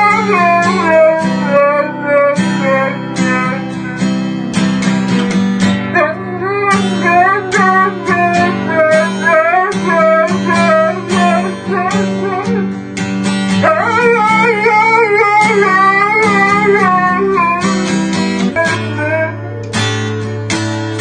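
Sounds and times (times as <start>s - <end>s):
person singing: 0.0s - 4.0s, 6.0s - 12.7s, 13.6s - 17.9s
strummed acoustic guitar: 0.0s - 21.0s.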